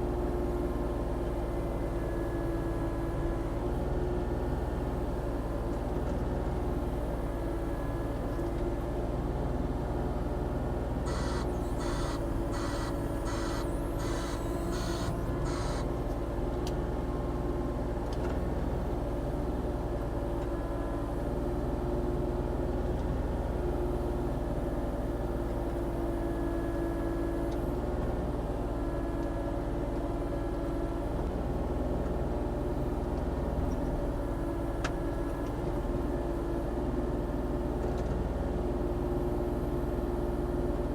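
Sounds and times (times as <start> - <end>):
excavator engine running: 1.3 - 17.1
short hissing pulses: 11.1 - 15.9.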